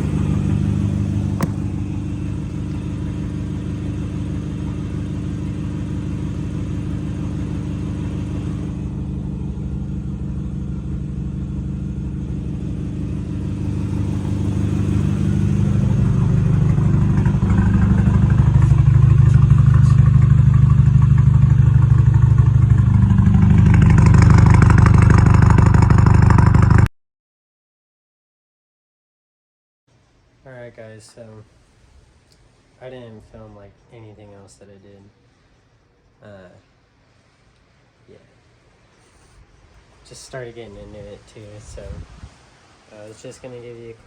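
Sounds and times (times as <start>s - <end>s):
car engine running: 0.0s - 26.9s.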